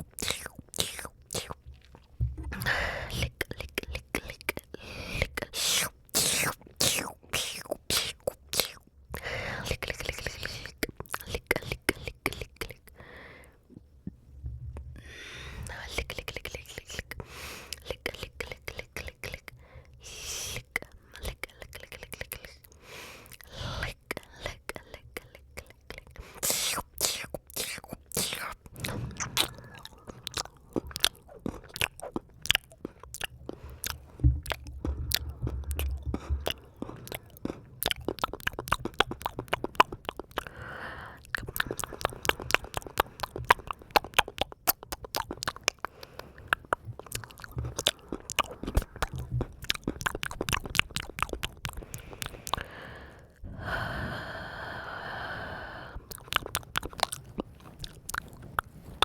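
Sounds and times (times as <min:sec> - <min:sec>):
tongue and lip clicks: 0:00.0 - 0:13.0, 0:15.6 - 0:53.4, 0:55.9 - 0:59.0.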